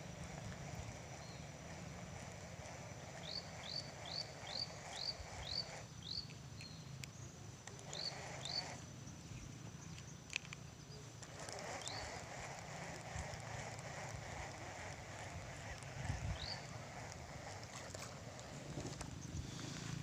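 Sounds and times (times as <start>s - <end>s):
bird chirping: 1.1s - 1.8s, 3.0s - 12.3s, 15.6s - 16.8s.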